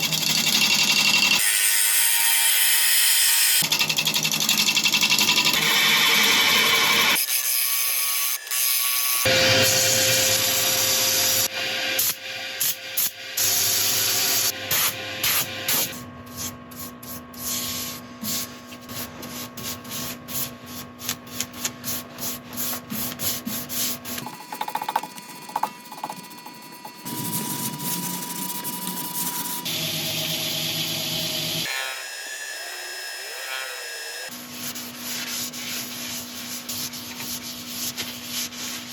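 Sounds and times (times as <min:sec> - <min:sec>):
sanding on wood: 0:34.3 - 0:38.9.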